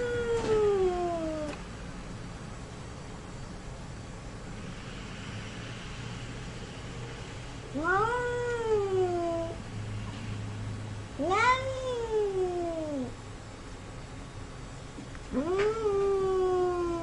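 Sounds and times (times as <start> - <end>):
cat meowing: 7.7 - 9.6, 15.3 - 17.0.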